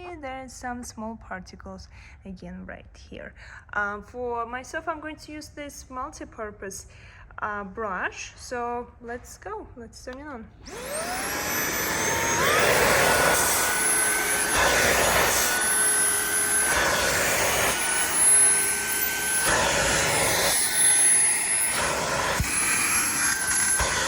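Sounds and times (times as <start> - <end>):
vacuum motor whine: 10.6 - 24.0.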